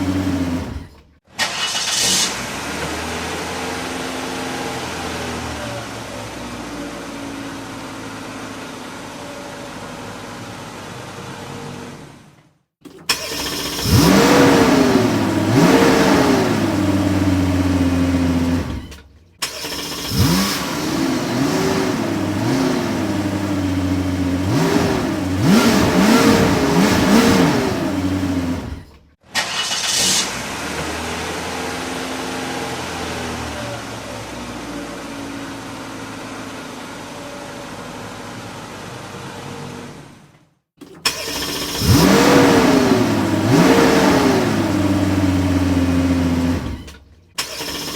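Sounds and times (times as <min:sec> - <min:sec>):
engine starting up: 0:00.0 - 0:03.3, 0:12.8 - 0:31.2, 0:40.8 - 0:47.9
car engine revving: 0:00.0 - 0:09.0, 0:13.1 - 0:37.0, 0:41.0 - 0:47.9.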